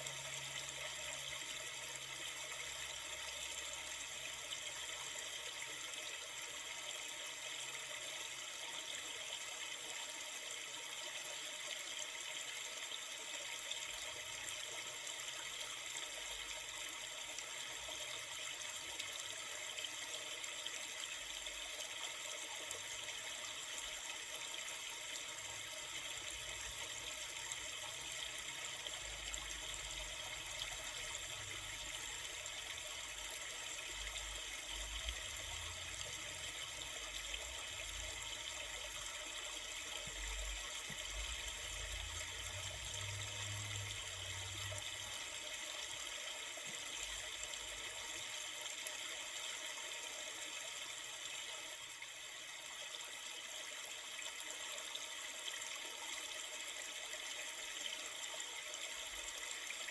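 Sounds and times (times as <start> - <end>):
faint low rumble: 40.1 - 45.3.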